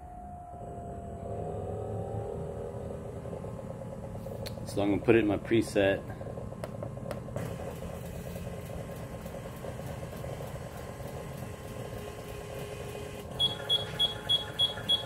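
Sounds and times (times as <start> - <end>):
steady low hum: 0.0 - 15.0
electronic device beeping rapidly: 13.3 - 15.0.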